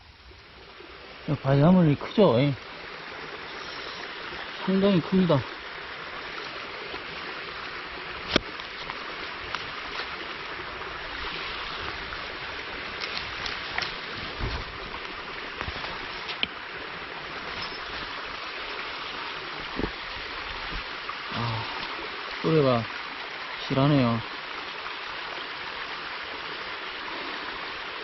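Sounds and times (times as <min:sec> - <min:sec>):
mountain stream rushing: 0:00.0 - 0:28.0.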